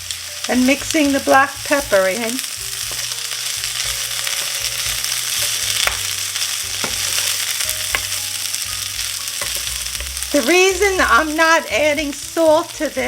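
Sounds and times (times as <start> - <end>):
food sizzling in a frying pan: 0.0 - 13.0
utensil knocking against pan: 5.4 - 6.1, 6.8 - 8.2, 9.4 - 10.2.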